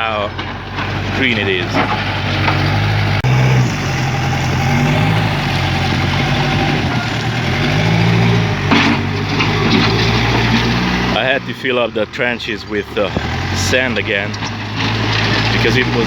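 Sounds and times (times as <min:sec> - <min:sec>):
backhoe diesel engine running: 0:00.0 - 0:16.0.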